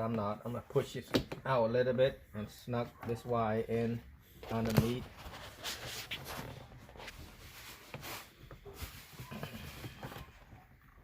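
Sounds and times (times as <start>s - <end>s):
faint rustling: 2.9s - 11.0s.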